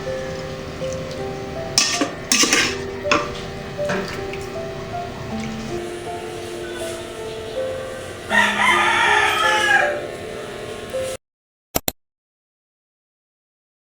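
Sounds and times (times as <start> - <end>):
soft background music: 0.0 - 11.2
rooster crowing: 5.8 - 11.1
short clicks: 11.8 - 12.0.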